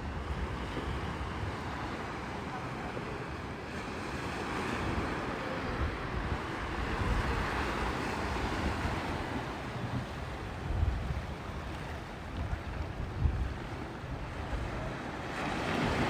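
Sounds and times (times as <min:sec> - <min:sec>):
sea surf washing onto beach: 0:00.0 - 0:16.0
wind buffeting microphone: 0:04.8 - 0:16.0.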